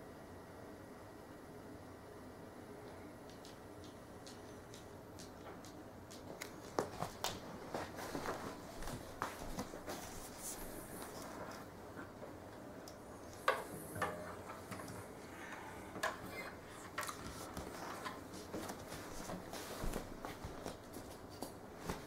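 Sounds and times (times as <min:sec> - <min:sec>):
faint clicks and light knocks: 0:02.8 - 0:15.1.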